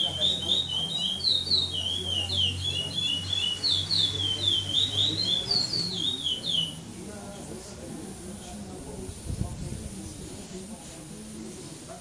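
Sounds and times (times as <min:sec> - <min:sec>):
finch singing whistled notes: 0:00.0 - 0:06.8.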